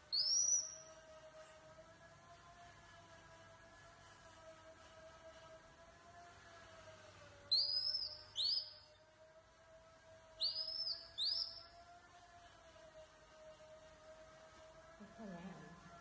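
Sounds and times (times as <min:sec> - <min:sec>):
whistle-like animal calls: 0:00.1 - 0:00.9, 0:07.5 - 0:08.8, 0:10.4 - 0:11.6.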